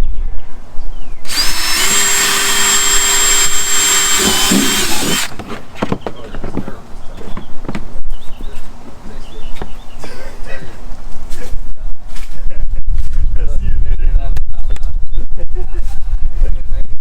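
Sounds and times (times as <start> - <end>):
power drill boring: 1.2 - 5.4.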